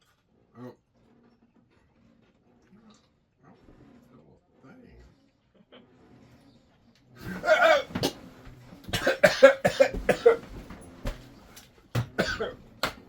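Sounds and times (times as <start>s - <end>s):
person coughing and spluttering: 7.2s - 8.2s, 8.9s - 10.5s, 12.1s - 12.6s.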